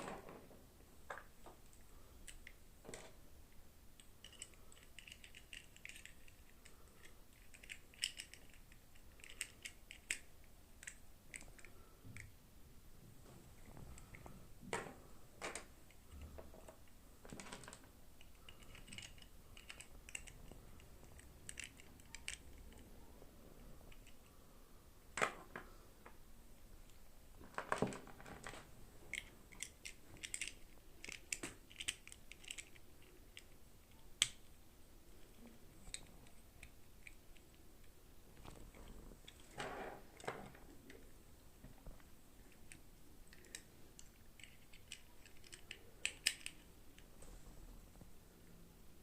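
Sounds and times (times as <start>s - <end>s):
plastic packaging clicking and rustling: 16.5s - 22.5s, 27.4s - 33.5s.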